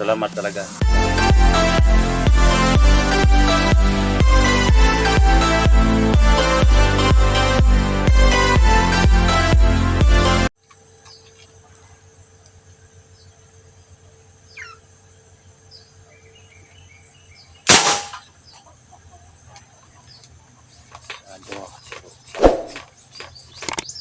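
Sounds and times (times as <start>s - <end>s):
music: 0.0s - 10.5s
faint bird chirps: 10.9s - 24.0s
toy gun shot striking tin can: 17.7s - 18.2s.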